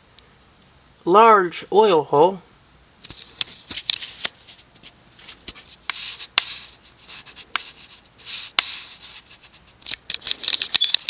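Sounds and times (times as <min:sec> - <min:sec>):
scratchy rustles: 0:03.1 - 0:10.8.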